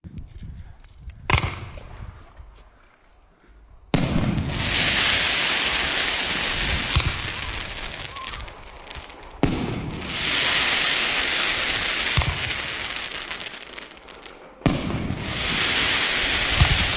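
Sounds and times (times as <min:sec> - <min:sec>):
firework bangs: 0:03.9 - 0:16.9
firework crackling hiss: 0:04.1 - 0:16.9.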